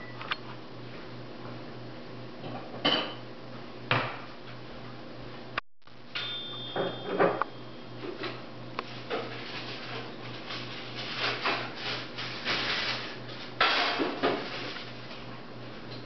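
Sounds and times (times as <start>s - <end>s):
scraping and rustling: 8.8s - 15.2s.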